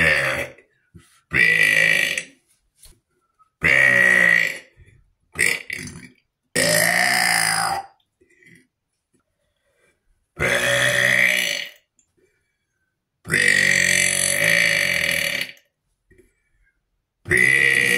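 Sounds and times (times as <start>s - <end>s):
person burping: 0.0s - 0.7s, 1.3s - 2.4s, 3.6s - 4.8s, 5.4s - 8.7s, 10.4s - 11.9s, 13.3s - 15.7s, 17.3s - 17.9s.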